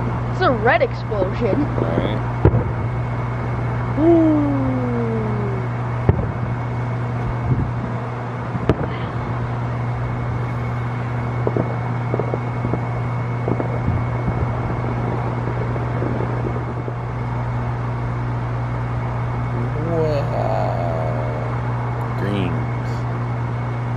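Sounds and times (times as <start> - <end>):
low mechanical hum: 0.0 - 23.9
distant fireworks bursting: 1.4 - 3.8, 5.6 - 7.8, 8.4 - 17.8.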